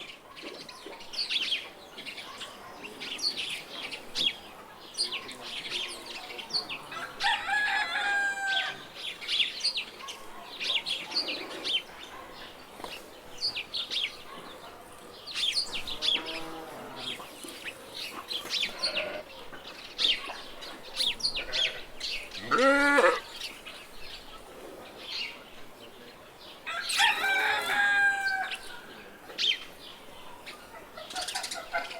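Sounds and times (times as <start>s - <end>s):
small birds chirping: 0.0s - 7.8s, 8.5s - 31.9s
chickens calling: 0.0s - 31.9s
rooster crowing: 6.9s - 8.9s, 26.7s - 28.8s.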